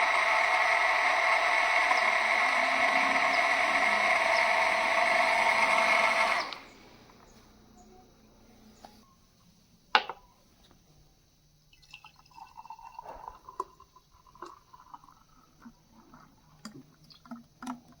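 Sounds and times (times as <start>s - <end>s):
milkshake gurgling and dripping: 0.0s - 6.7s, 11.7s - 18.0s.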